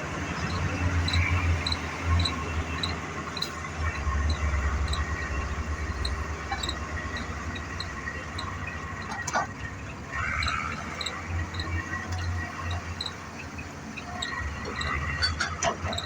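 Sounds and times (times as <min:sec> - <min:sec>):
diesel engine running: 0:00.0 - 0:16.0
falling squeal: 0:10.1 - 0:13.2.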